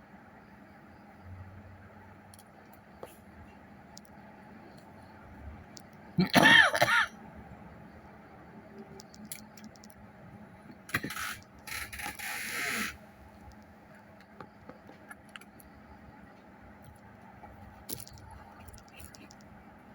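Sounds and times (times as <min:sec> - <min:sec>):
small clicks and taps: 0:08.8 - 0:10.0, 0:13.5 - 0:15.7, 0:16.3 - 0:19.5.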